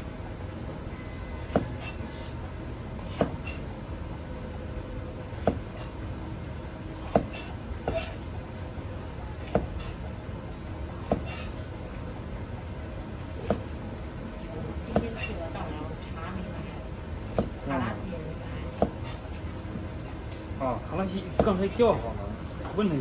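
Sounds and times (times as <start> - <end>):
low kitchen hum: 0.0 - 23.0
knife cutting on board: 3.0 - 3.6, 7.0 - 8.2, 9.4 - 10.0.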